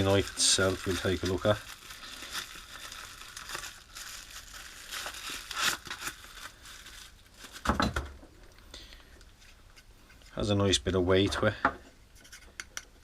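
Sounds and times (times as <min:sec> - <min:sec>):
plastic packaging crinkling: 0:00.0 - 0:08.0.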